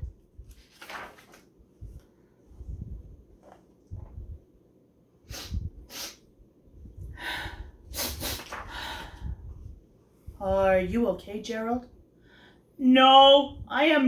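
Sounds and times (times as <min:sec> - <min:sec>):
person sniffing and snorting: 0:05.3 - 0:06.2, 0:07.9 - 0:08.6.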